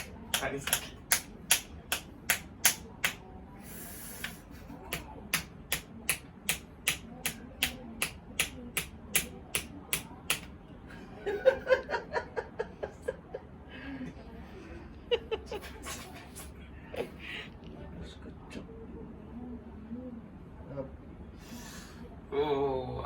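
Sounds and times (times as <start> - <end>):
sharp taps: 0.0 - 3.2, 4.2 - 10.5.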